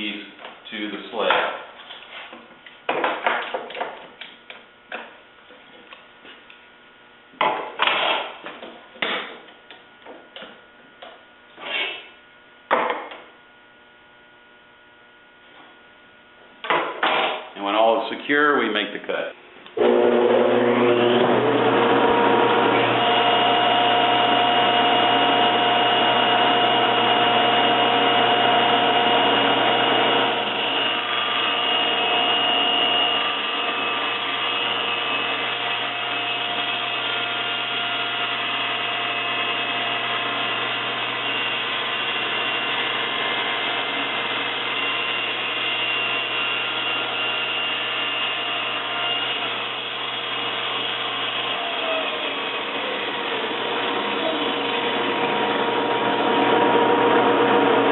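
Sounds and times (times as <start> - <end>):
table saw cutting wood: 19.8 - 57.9.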